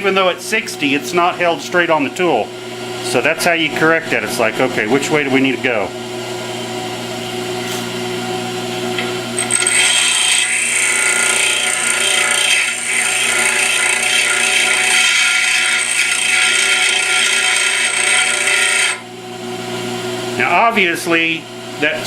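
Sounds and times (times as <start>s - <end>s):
grinder motor hum: 0.0s - 19.2s
grinding wheel on steel whining: 9.4s - 19.0s.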